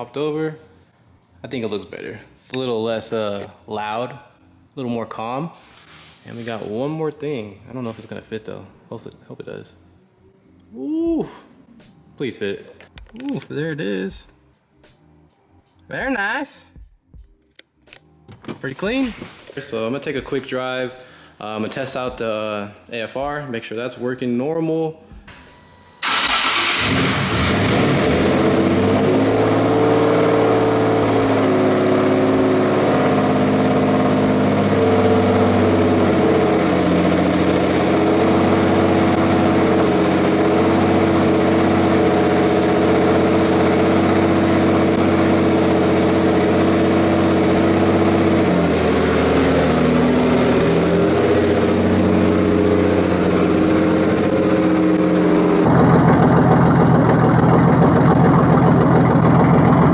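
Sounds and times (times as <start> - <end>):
car engine starting and running: 25.3 - 59.9.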